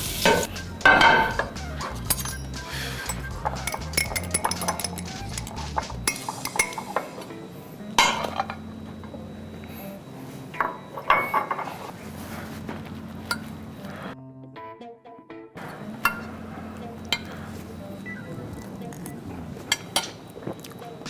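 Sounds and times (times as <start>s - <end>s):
plates and cutlery clinking: 0.2s - 9.8s, 10.4s - 12.4s, 13.2s - 13.6s, 15.6s - 17.8s, 18.6s - 21.0s.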